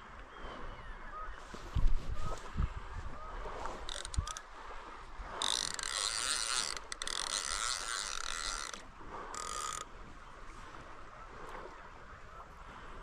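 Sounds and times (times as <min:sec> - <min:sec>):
fishing reel ratchet: 0:03.8 - 0:04.5, 0:05.3 - 0:09.9.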